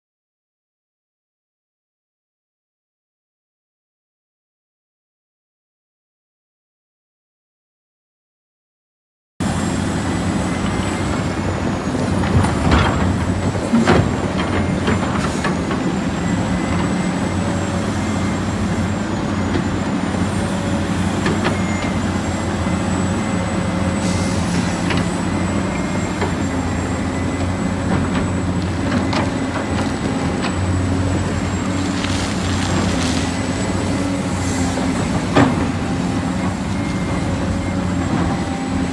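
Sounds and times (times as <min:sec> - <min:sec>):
heavy diesel machinery running: 0:09.4 - 0:38.9.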